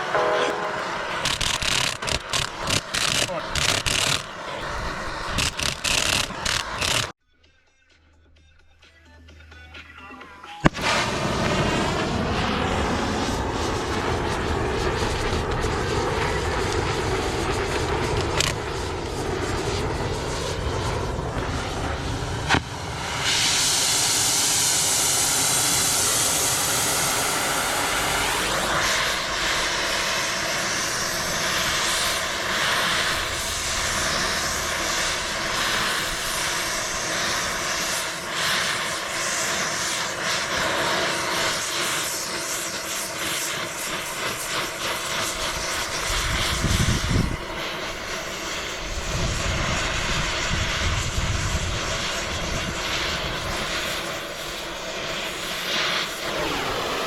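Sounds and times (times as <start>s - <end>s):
motor running: 1.2s - 7.1s.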